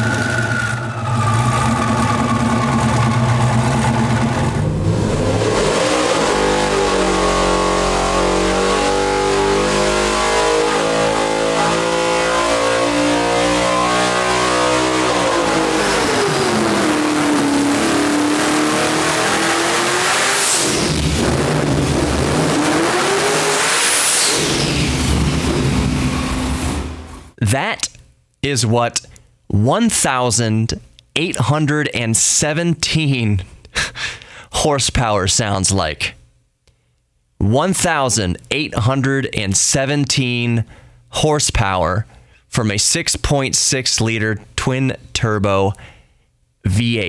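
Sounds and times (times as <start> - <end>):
car engine revving: 0.0 - 27.4.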